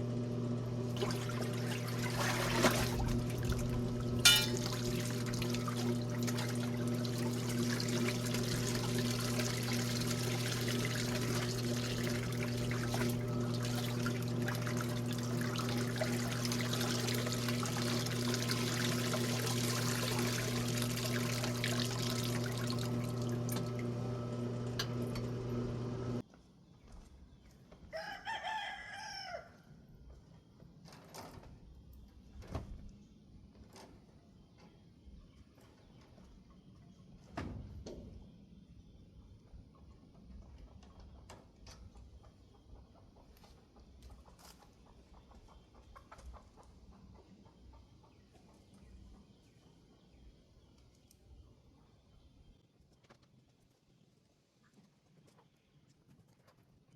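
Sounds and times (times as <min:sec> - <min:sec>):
washing machine humming: 0:00.0 - 0:26.2
water noise: 0:00.4 - 0:26.2
rooster crowing: 0:27.9 - 0:29.7.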